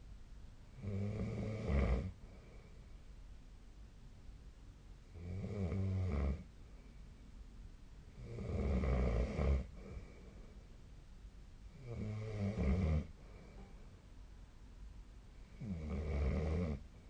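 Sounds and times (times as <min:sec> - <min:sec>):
person snoring: 0:11.8 - 0:13.1.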